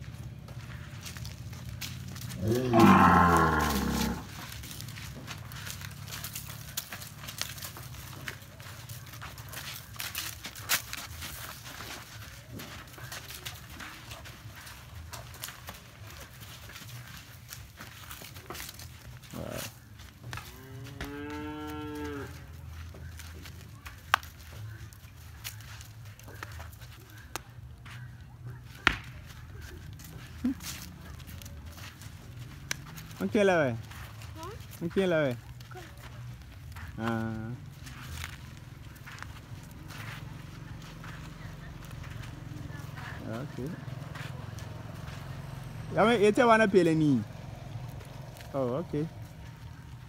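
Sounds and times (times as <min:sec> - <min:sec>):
cow mooing: 0:02.4 - 0:04.3, 0:20.6 - 0:22.4.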